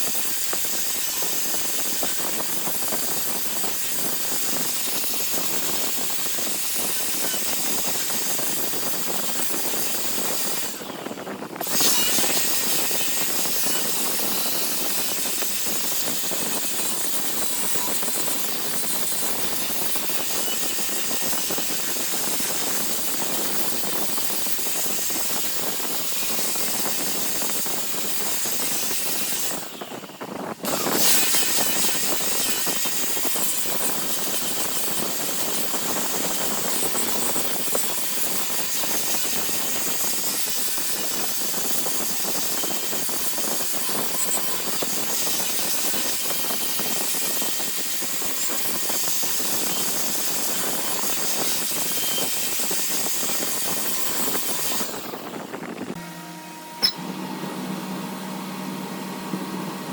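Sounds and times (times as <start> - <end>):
wood lathe running: 0.0 - 59.9.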